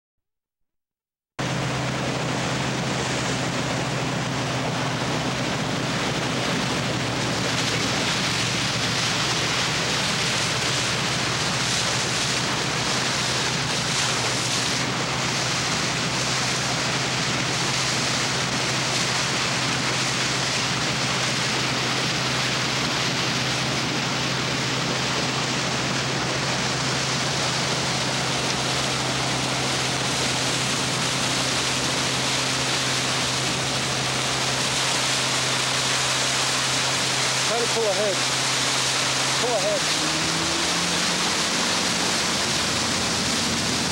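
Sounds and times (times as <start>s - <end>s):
boat engine running: 1.4s - 43.9s
water rushing: 1.4s - 43.9s
wind noise: 1.5s - 34.9s.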